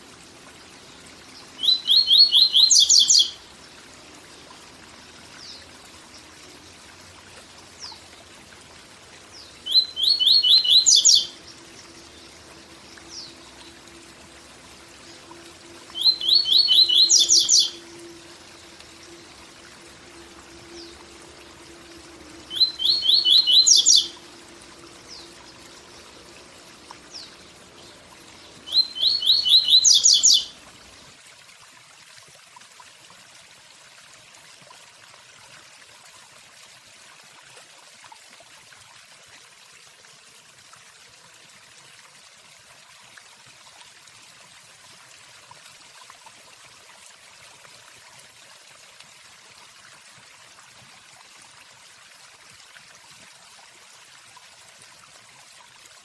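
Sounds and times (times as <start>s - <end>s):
bird singing high notes: 15.9s - 18.4s, 22.4s - 24.3s, 28.6s - 30.6s.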